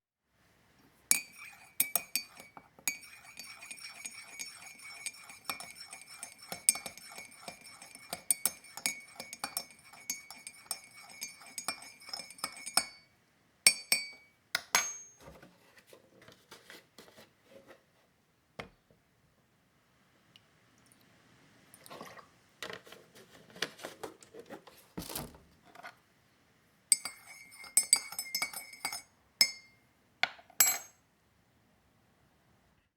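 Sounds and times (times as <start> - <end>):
spoon scraping a cup: 1.1 - 13.0, 26.9 - 29.7
teaspoon clinking in a cup: 1.1 - 13.1, 13.7 - 15.2, 26.9 - 29.8, 30.6 - 31.0.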